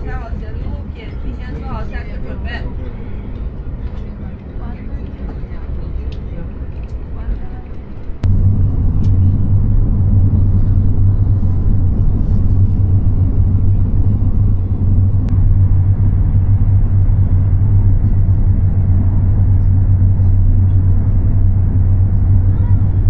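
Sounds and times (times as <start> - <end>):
train rumbling on track: 0.0 - 23.0.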